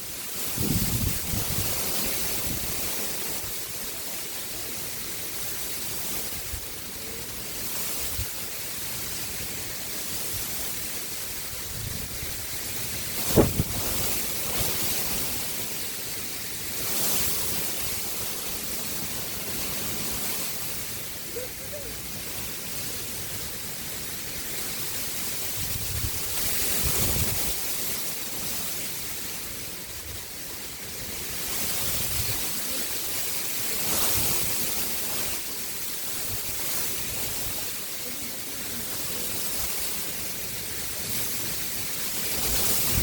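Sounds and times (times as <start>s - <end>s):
wind buffeting microphone: 0.5s - 3.0s, 11.4s - 15.4s, 25.5s - 27.6s
river water rushing: 1.6s - 25.6s, 27.5s - 43.0s.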